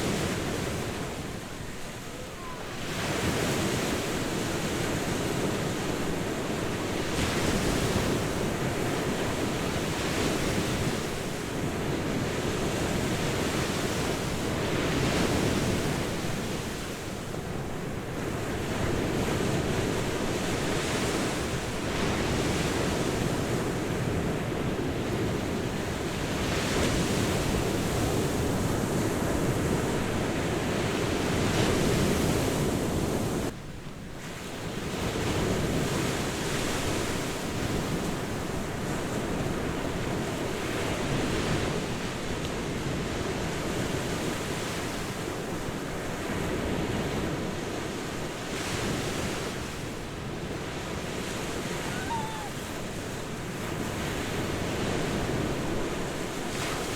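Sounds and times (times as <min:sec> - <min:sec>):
ocean surf breaking: 0:48.3 - 0:56.9.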